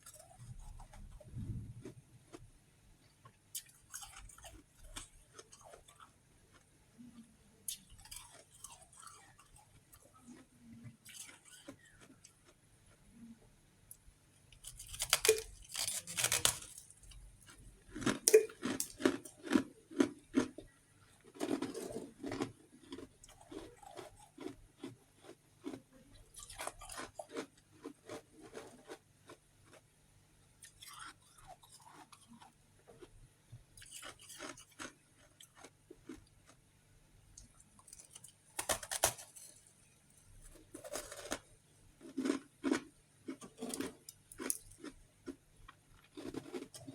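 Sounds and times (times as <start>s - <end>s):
crunching ice chunks: 14.6s - 16.9s, 40.7s - 41.5s.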